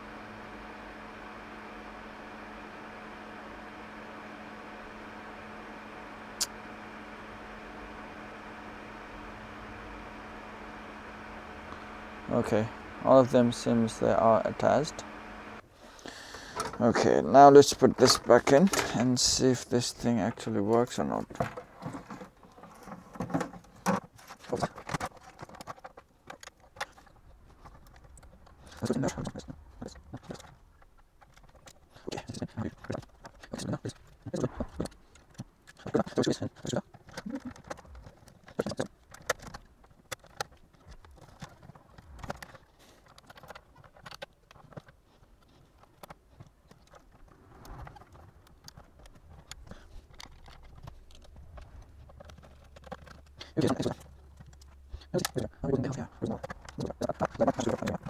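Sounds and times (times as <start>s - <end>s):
plastic parts clicking: 15.9s - 58.0s.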